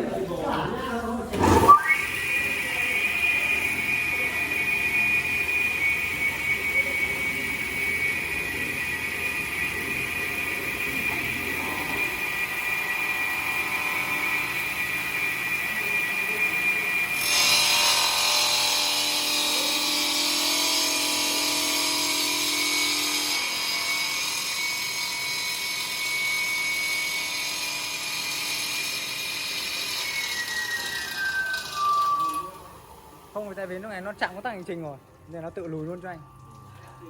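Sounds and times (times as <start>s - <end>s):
saw whining: 1.4s - 34.5s.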